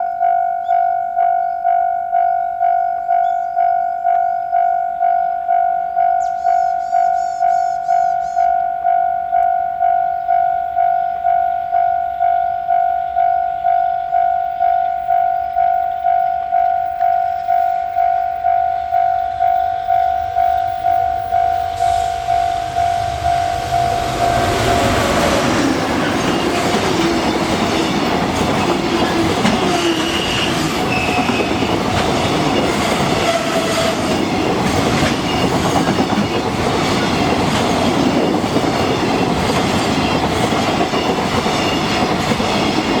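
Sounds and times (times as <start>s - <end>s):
level crossing warning bell: 0.0s - 43.0s
train wheels on rails: 13.7s - 43.0s.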